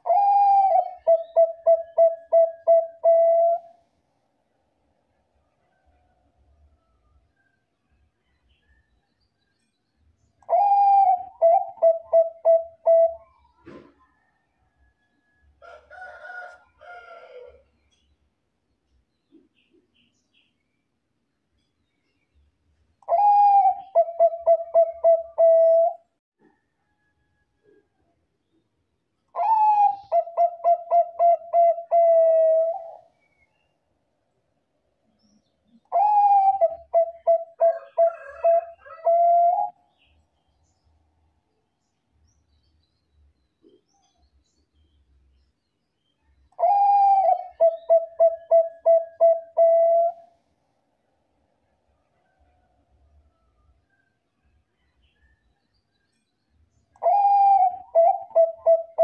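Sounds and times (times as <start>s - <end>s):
dove cooing: 0.0s - 3.7s, 10.4s - 13.9s, 23.1s - 26.0s, 29.3s - 33.1s, 35.8s - 39.8s, 46.6s - 50.3s, 57.0s - 59.0s.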